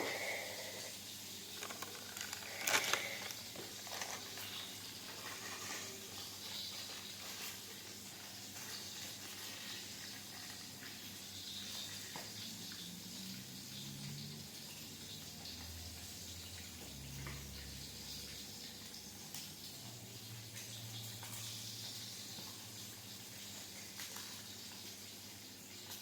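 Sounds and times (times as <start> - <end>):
steady hiss: 0.0 - 10.6.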